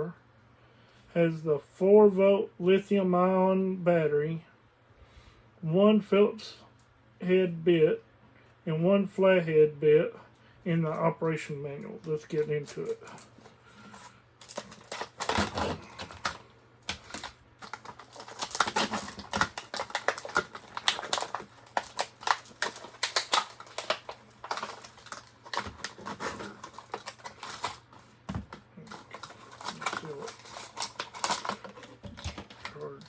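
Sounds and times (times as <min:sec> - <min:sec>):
packaging being opened by hand: 0:12.2 - 0:33.0.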